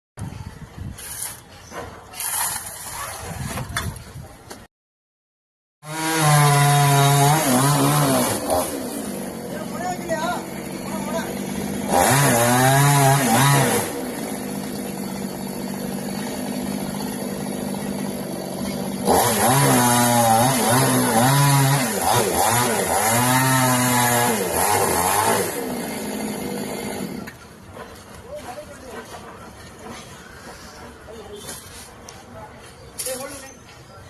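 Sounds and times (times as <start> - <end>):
chainsaw revving and idling: 5.8 - 27.4.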